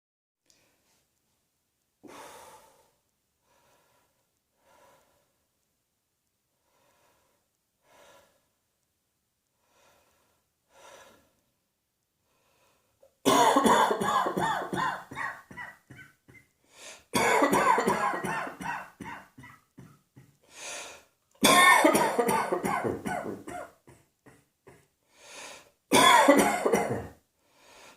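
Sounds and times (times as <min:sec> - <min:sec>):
person breathing faintly: 0:02.0 - 0:05.5, 0:06.5 - 0:08.6, 0:09.5 - 0:11.5, 0:12.2 - 0:13.1, 0:16.4 - 0:17.1, 0:20.2 - 0:21.2, 0:25.0 - 0:25.8, 0:27.4 - 0:27.9
person coughing: 0:13.3 - 0:20.4, 0:21.4 - 0:24.9, 0:25.9 - 0:27.2.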